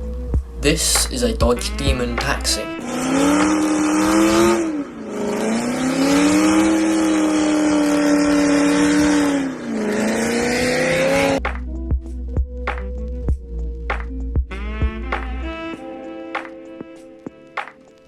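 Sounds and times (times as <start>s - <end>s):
car engine revving high: 1.6s - 11.4s.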